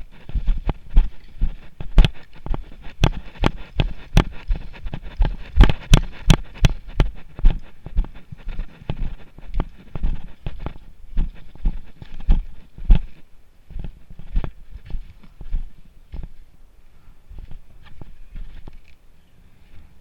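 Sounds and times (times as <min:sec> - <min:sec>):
footsteps walking briskly: 0:00.0 - 0:16.6, 0:17.3 - 0:19.0
sharp clicks and knocks: 0:00.2 - 0:13.2.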